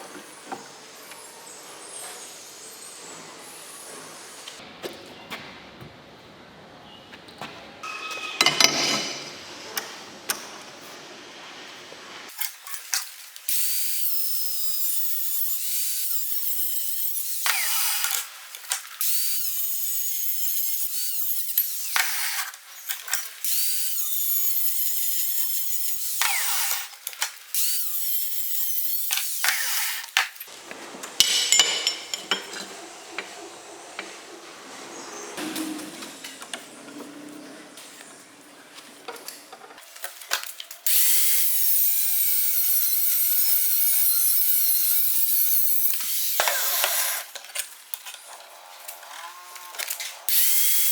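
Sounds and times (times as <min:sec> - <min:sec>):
workpieces knocking and clattering: 0:07.8 - 0:09.9, 0:30.2 - 0:33.3
power tool whining: 0:13.5 - 0:18.4, 0:19.0 - 0:30.1.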